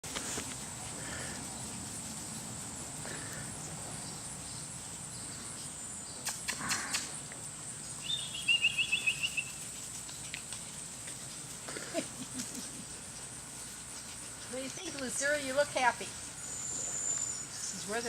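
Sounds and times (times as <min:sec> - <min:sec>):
sharp clicks: 0:06.2 - 0:07.2
bird chirping: 0:07.7 - 0:09.7, 0:16.4 - 0:18.0.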